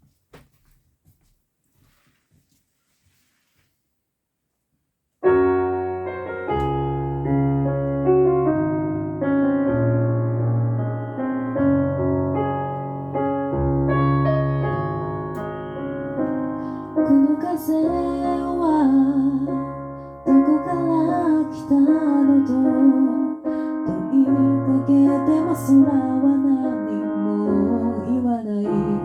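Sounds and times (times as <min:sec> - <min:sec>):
a cappella vocal chords: 0:17.0 - 0:29.0.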